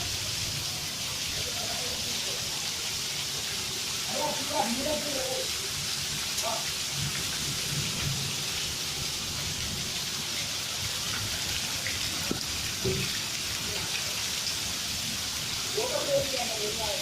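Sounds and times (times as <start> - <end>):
heavy rain hissing: 0.0 - 17.0
hail hits: 3.6 - 17.0.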